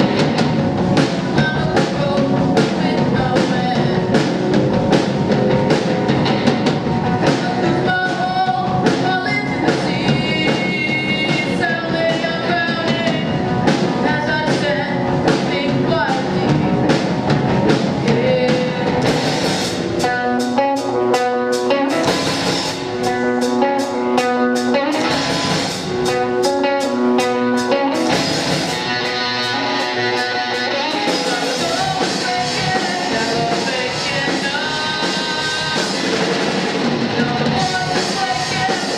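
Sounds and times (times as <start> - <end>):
drum kit: 0.0 - 38.9
electric guitar: 0.0 - 38.9
person singing: 1.0 - 5.1, 7.0 - 19.2, 20.0 - 38.9.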